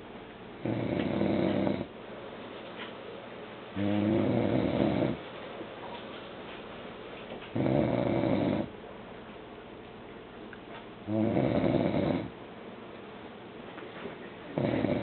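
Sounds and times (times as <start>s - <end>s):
man snoring: 0.6s - 1.9s, 3.8s - 5.2s, 7.6s - 8.7s, 11.1s - 12.3s, 14.6s - 15.0s.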